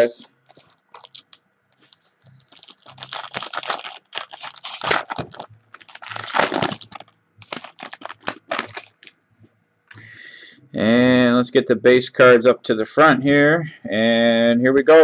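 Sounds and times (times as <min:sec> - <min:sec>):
wrapper being torn and crinkled: 0:00.5 - 0:09.1.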